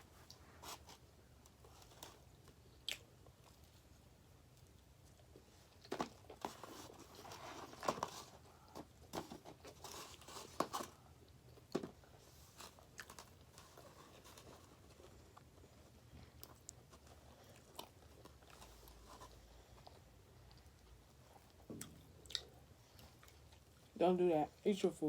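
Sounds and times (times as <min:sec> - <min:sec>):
chewing with crisp crunches: 0:01.8 - 0:03.9, 0:11.0 - 0:14.0, 0:15.0 - 0:23.9.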